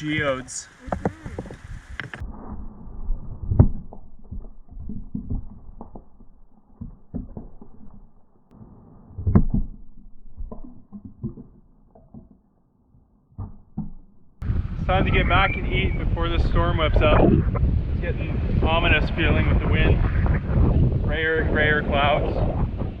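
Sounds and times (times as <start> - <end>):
muffled knocks and thumps: 3.4 - 6.2.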